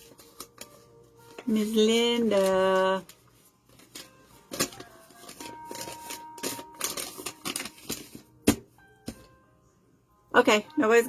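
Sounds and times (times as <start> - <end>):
rustling of things handled: 0.0 - 9.3
clicks of things handled: 3.7 - 9.3.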